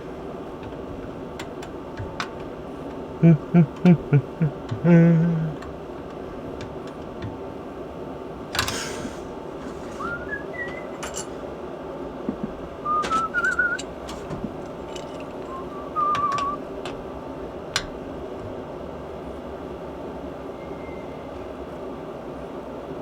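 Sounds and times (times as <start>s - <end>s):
steady low hum: 0.0s - 23.0s
man whistling: 10.0s - 11.0s, 12.8s - 13.9s, 15.5s - 16.6s, 20.6s - 21.3s.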